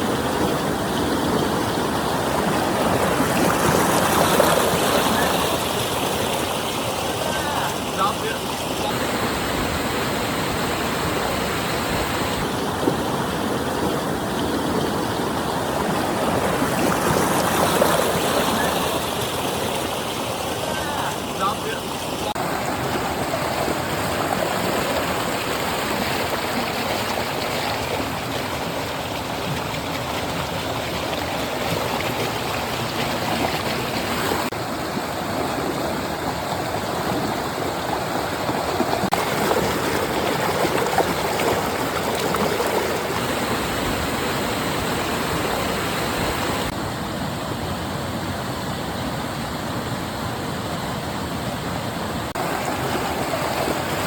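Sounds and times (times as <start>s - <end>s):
stream water rushing and gurgling: 0.0s - 54.0s.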